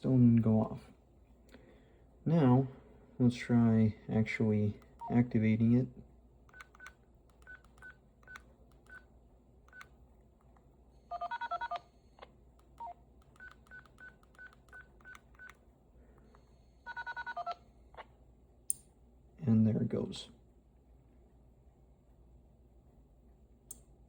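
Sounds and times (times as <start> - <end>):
keypad touch-tone beeps: 6.5 - 9.0, 11.1 - 11.8, 12.8 - 15.6.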